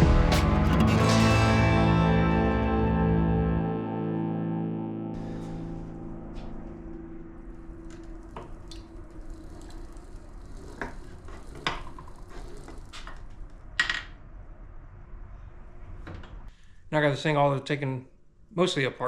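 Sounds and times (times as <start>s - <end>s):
electric guitar music: 0.0s - 8.8s.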